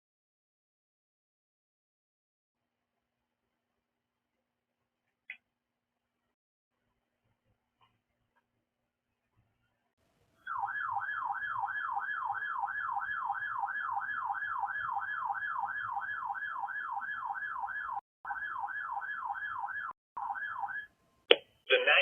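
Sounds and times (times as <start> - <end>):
warbling electronic alert siren: 10.5 - 20.9.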